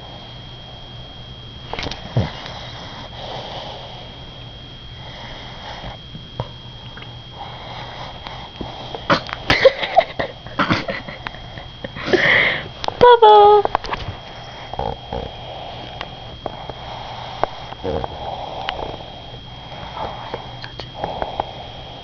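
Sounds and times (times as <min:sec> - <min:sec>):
dog snoring: 0:01.7 - 0:09.6, 0:14.2 - 0:22.0
dog snorting and sniffing: 0:01.8 - 0:04.2, 0:05.0 - 0:06.1, 0:07.3 - 0:09.5, 0:14.2 - 0:21.6.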